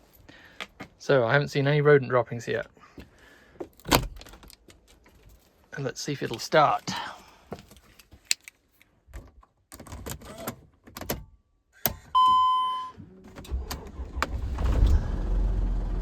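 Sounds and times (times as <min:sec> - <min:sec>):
single beep: 0:12.2 - 0:13.0
van engine starting and idling: 0:12.2 - 0:16.0.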